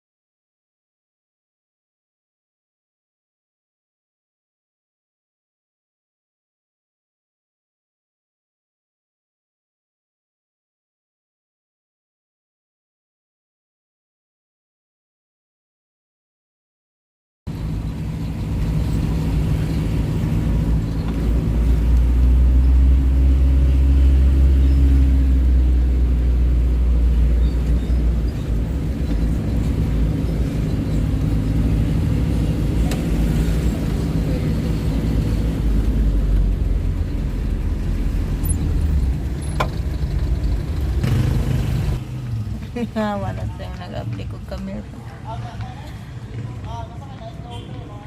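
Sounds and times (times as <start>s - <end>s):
road noise: 17.5s - 48.0s
vehicle engine rumble: 17.5s - 48.0s.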